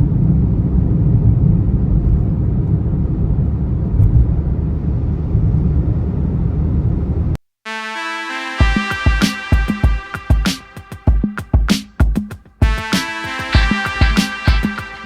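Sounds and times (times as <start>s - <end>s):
road and wind noise: 0.0s - 7.4s.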